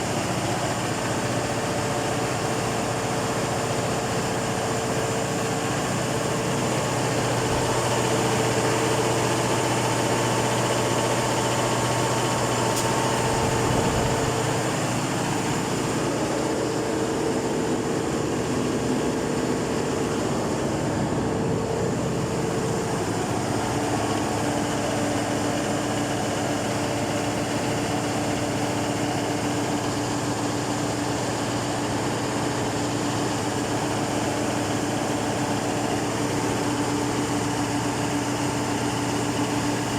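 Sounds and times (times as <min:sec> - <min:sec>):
diesel engine droning: 0:00.0 - 0:30.2.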